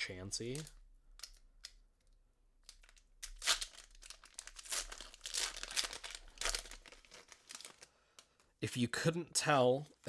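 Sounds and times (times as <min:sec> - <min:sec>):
packaging crinkling: 0:00.4 - 0:01.8, 0:02.6 - 0:08.5
packaging tearing: 0:00.5 - 0:01.4, 0:02.7 - 0:07.9.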